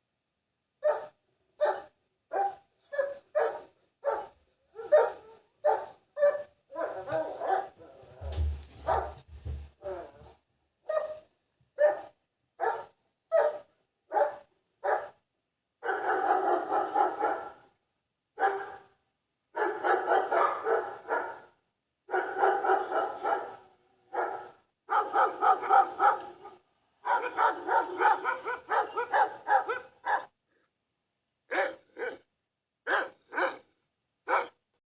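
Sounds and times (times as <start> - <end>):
dog barking: 0.8 - 9.2, 10.9 - 15.2, 15.8 - 17.7, 18.4 - 19.0, 19.6 - 30.4, 31.5 - 33.7, 34.3 - 34.6.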